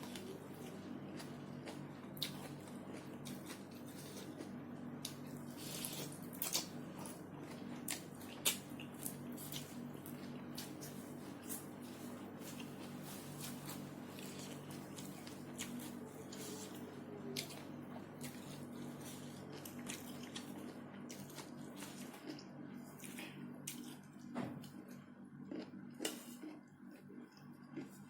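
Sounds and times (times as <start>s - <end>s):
steady low hum: 0.0s - 28.0s.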